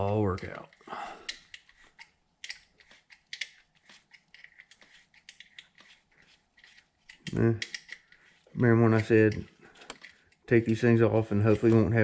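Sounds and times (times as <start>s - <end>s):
clicks of small metal tools: 7.1s - 8.2s.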